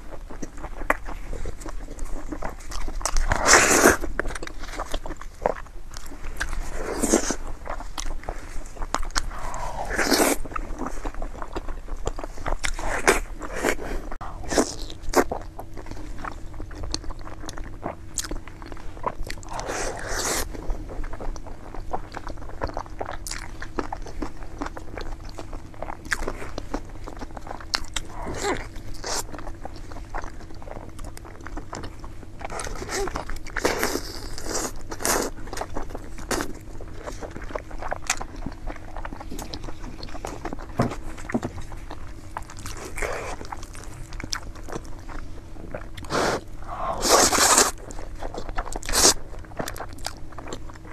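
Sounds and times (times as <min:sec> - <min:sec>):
person chewing food: 0:00.0 - 0:50.9
slurping noises: 0:46.0 - 0:49.2.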